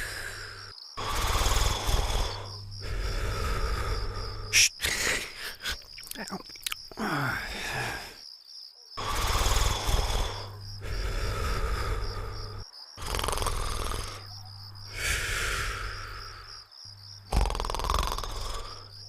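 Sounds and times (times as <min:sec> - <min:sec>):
cartoon snoring: 0:00.0 - 0:05.7, 0:09.0 - 0:16.6, 0:17.2 - 0:19.0.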